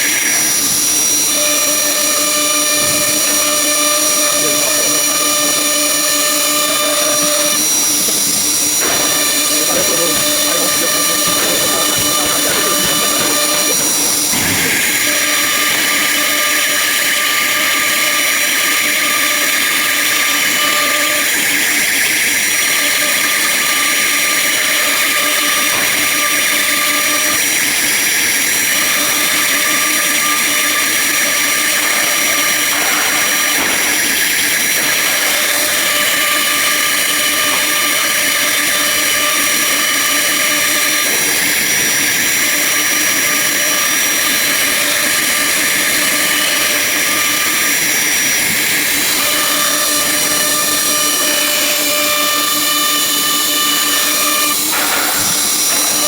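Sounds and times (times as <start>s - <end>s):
cnc router spindle whine: 0.0s - 56.0s
high machine tone: 0.0s - 56.0s
loud hiss: 6.7s - 16.8s.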